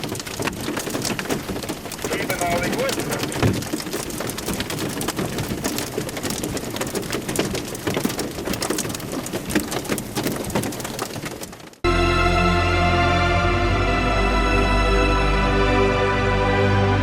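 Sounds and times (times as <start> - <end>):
hail and rain pelting a car: 0.0 - 11.8.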